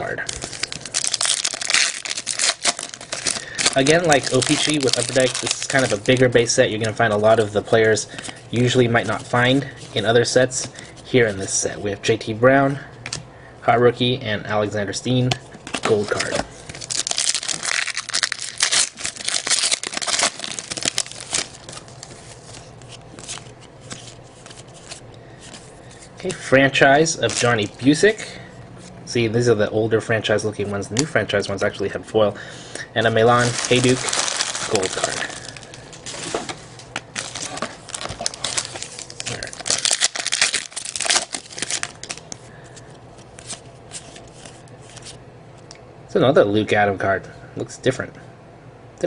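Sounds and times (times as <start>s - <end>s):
card pack wrapper crinkling and tearing: 0.3s - 7.0s, 15.7s - 25.0s, 27.2s - 27.7s, 33.2s - 42.4s.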